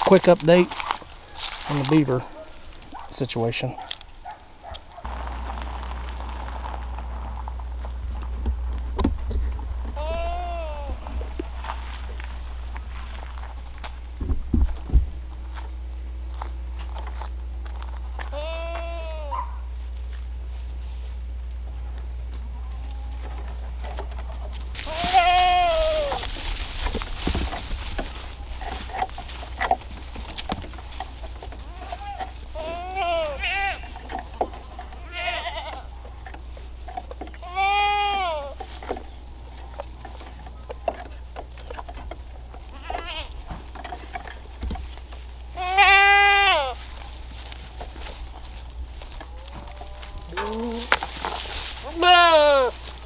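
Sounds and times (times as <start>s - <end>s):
goat bleating: 9.8s - 13.5s, 18.2s - 19.6s, 24.8s - 29.1s, 30.0s - 40.1s, 42.5s - 43.8s, 45.4s - 47.7s, 49.3s - 53.0s
light knocks and rustles: 11.0s - 15.5s, 23.3s - 37.4s, 38.5s - 45.6s.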